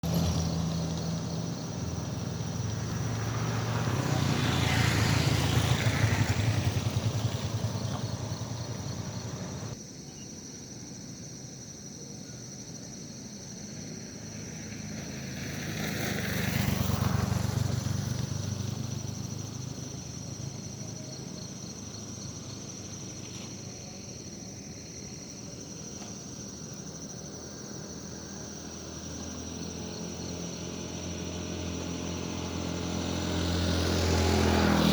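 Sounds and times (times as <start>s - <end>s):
vehicles passing: 0.0s - 9.8s, 14.3s - 24.2s, 25.6s - 34.9s
high insect buzz: 0.1s - 10.3s.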